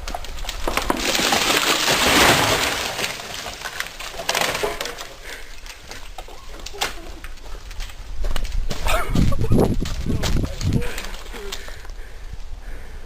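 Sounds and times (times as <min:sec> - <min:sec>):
tree crashing down: 0:00.0 - 0:07.0
branches snapping and cracking: 0:00.0 - 0:11.9.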